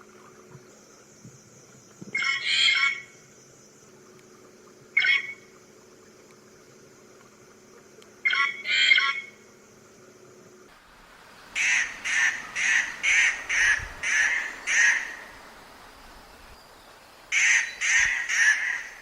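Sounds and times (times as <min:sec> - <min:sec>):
bird harsh grating calls: 0:11.6 - 0:15.4, 0:17.3 - 0:19.0.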